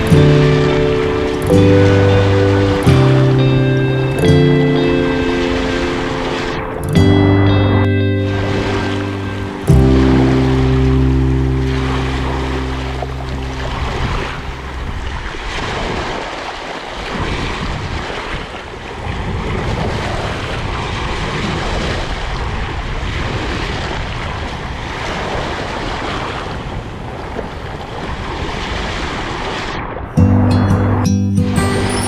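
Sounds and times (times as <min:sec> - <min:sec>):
sea waves breaking: 0:00.0 - 0:22.4.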